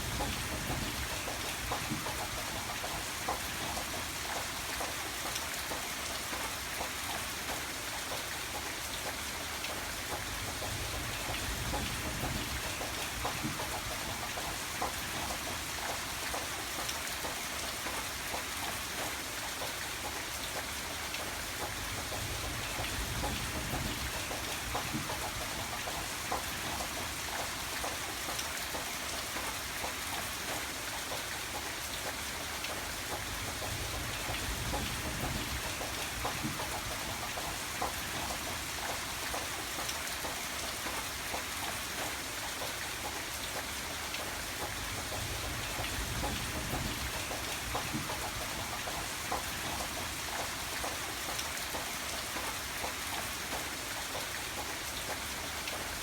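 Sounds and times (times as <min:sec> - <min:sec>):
raindrops ticking on surface: 0:00.0 - 0:56.0
steady rain: 0:00.0 - 0:56.0.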